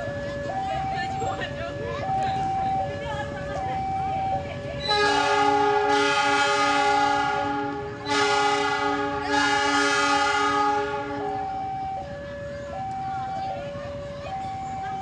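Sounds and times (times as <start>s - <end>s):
level crossing alarm beeping: 0.0s - 7.4s, 8.0s - 15.0s
locomotive horn blasts: 4.8s - 11.5s.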